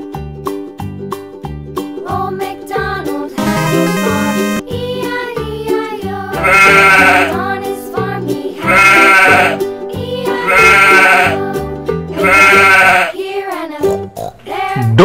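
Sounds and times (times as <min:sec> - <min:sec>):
cheerful children's music: 0:00.0 - 0:15.0
sheep bleating: 0:06.4 - 0:07.4, 0:08.6 - 0:09.6, 0:10.4 - 0:11.4, 0:12.2 - 0:13.2.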